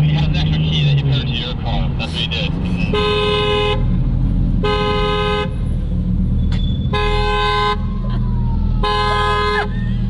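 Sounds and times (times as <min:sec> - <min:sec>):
engine and road noise: 0:00.0 - 0:10.0
car horn alarm blasts: 0:02.8 - 0:03.9, 0:04.6 - 0:05.6, 0:06.7 - 0:07.9, 0:08.8 - 0:10.0.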